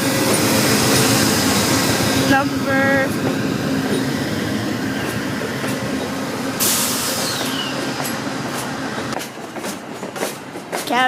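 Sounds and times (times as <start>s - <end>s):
train wheels clicking over rail joints: 0.0s - 2.2s, 3.1s - 11.0s
diesel locomotive engine running: 0.0s - 11.0s
loud air hiss: 0.4s - 2.4s, 6.4s - 8.0s.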